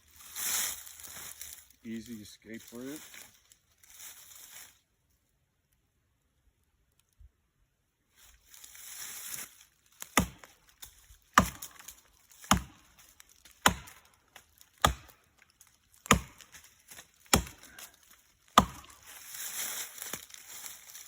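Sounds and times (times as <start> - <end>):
scraping rustle: 0.0 - 4.8, 19.0 - 21.0
axe chopping tree trunk: 10.0 - 15.3, 16.0 - 19.3.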